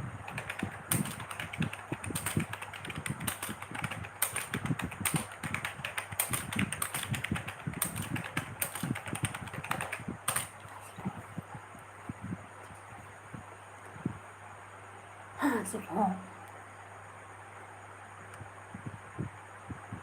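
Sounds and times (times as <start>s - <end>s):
fast typing on a keyboard: 0.0s - 11.1s.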